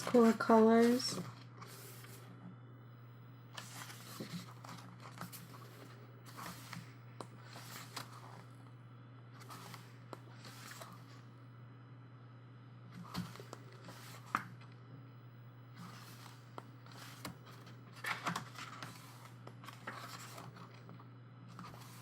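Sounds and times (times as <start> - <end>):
paper pages turning: 0.0 - 2.4, 3.5 - 8.6, 9.4 - 11.2, 12.9 - 14.7, 15.8 - 22.0
low electrical hum: 0.0 - 22.0.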